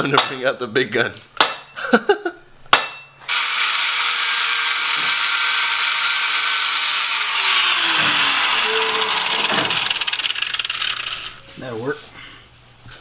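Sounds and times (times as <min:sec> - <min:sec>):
grinder grinding metal: 0:03.3 - 0:11.4.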